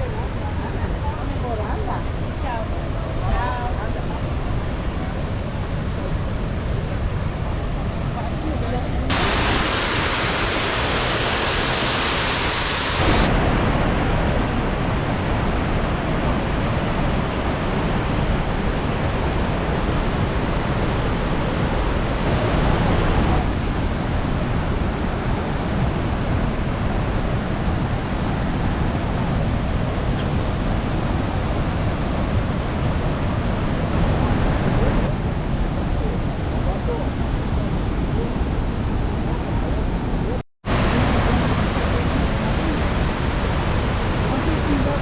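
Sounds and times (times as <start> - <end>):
waterfall rushing: 9.1 - 25.6, 40.7 - 45.0.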